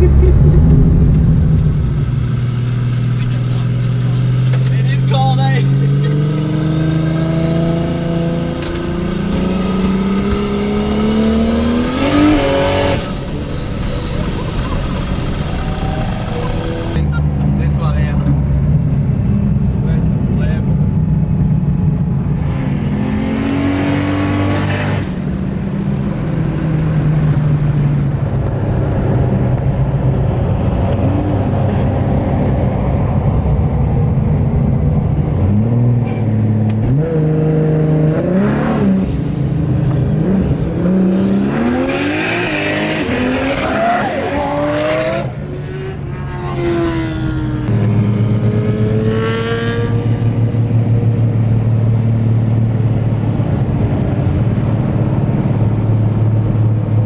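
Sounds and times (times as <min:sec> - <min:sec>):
car engine revving: 0:00.0 - 0:57.0.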